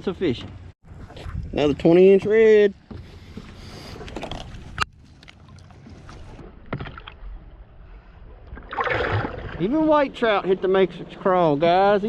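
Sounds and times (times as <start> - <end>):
wind and water noise: 0.0 - 12.0.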